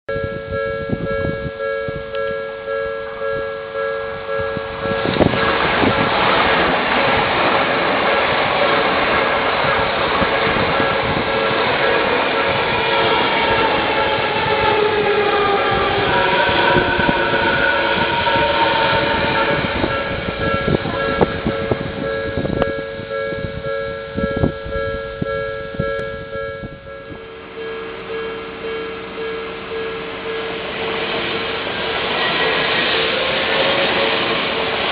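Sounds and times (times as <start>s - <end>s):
level crossing warning bell: 0.1s - 33.8s
approaching train rushing: 2.6s - 26.0s, 28.6s - 34.9s
train wheels clacking over rail joints: 5.2s - 16.0s.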